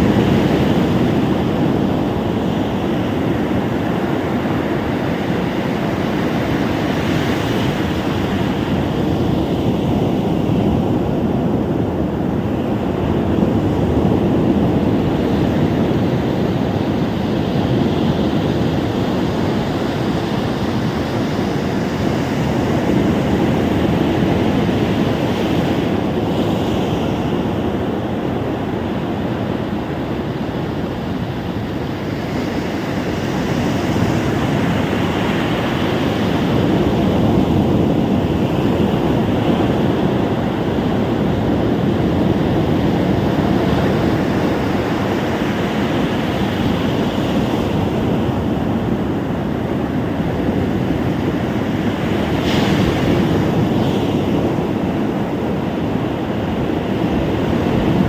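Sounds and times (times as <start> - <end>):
surf breaking on a beach: 0.0 - 58.0
wind on microphone: 0.0 - 58.0.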